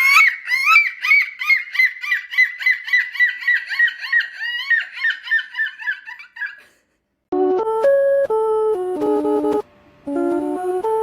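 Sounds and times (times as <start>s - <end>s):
person imitating seagull calls: 0.0s - 6.8s.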